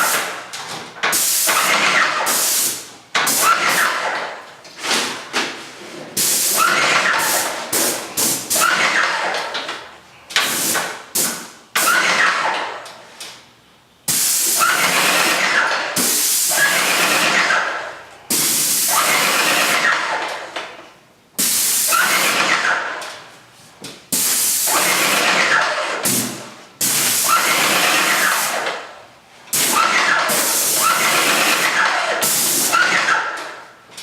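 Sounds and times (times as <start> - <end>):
paint sprayer hissing: 1.1 - 3.5, 26.0 - 28.7, 29.5 - 32.8.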